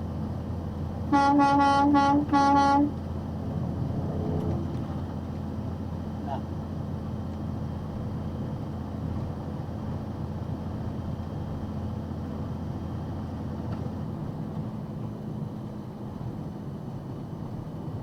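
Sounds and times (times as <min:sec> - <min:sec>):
road noise: 0:00.0 - 0:18.0
truck engine drone: 0:00.0 - 0:18.0.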